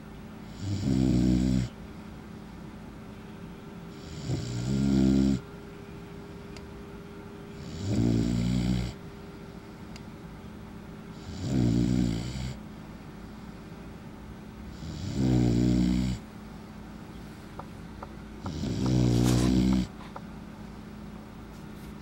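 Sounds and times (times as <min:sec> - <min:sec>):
puppy snoring: 0:00.5 - 0:01.7, 0:03.9 - 0:05.4, 0:07.5 - 0:09.0, 0:11.1 - 0:12.6, 0:14.7 - 0:16.2, 0:18.4 - 0:20.1.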